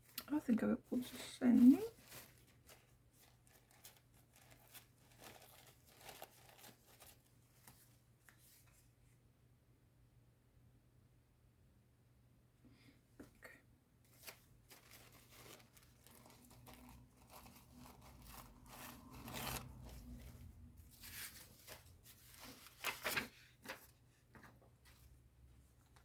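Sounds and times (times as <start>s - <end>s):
paper rustling and crinkling: 0.0s - 9.0s, 14.1s - 26.0s
paper tearing: 14.2s - 20.4s.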